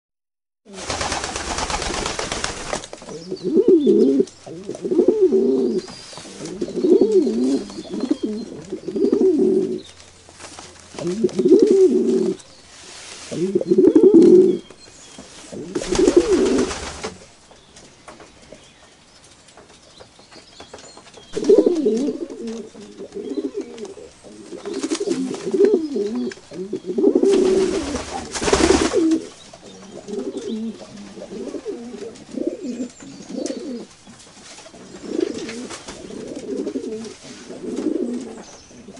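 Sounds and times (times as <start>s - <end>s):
rustling noise: 0.7s - 38.9s
pigeons cooing: 3.0s - 10.0s, 10.9s - 12.4s, 13.3s - 14.7s, 15.5s - 17.1s, 21.4s - 33.9s, 34.8s - 38.9s.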